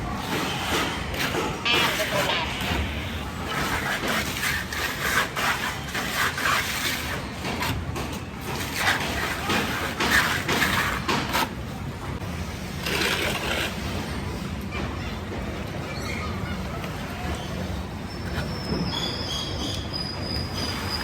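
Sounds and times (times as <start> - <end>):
trowel scraping plaster on wall: 0.2 - 11.6, 12.8 - 14.1.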